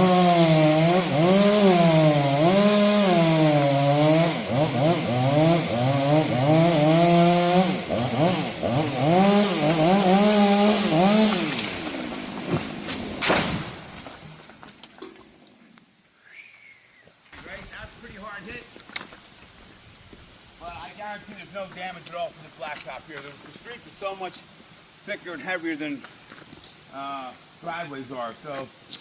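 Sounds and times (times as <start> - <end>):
chainsaw cutting tree trunk: 0.0 - 14.3
sharp crack or thump: 11.2 - 14.3.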